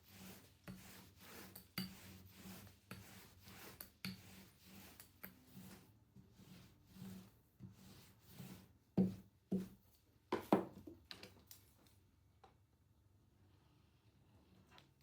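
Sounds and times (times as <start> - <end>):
soft rubbing and scraping: 0.0 - 9.9.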